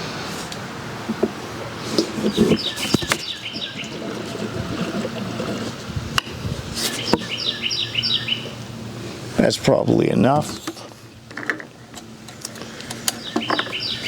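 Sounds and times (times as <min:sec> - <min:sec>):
birds chirping: 0:01.2 - 0:05.4, 0:06.2 - 0:11.2, 0:12.5 - 0:14.0
gasoline trickling into a tank: 0:01.5 - 0:07.4.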